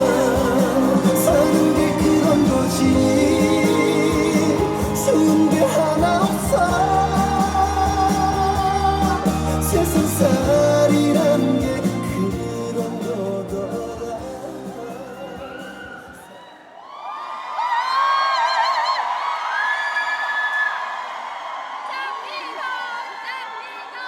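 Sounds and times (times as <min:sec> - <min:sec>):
pop song with singing and band: 0:00.0 - 0:16.7.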